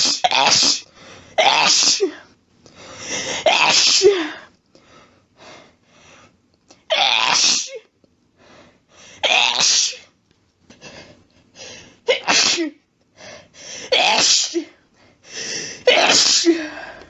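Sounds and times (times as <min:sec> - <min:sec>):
person sneezing: 0:00.0 - 0:02.3, 0:03.3 - 0:04.4, 0:06.9 - 0:07.8, 0:09.2 - 0:10.1, 0:12.1 - 0:12.8, 0:13.9 - 0:14.8, 0:15.8 - 0:16.9.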